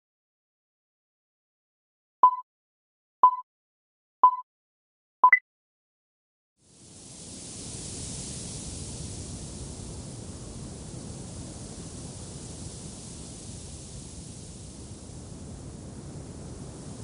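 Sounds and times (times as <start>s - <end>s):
timer beeps: 2.2s - 2.4s, 3.2s - 3.4s, 4.2s - 4.4s, 5.2s - 5.4s
steady wind-like hiss: 6.6s - 17.0s.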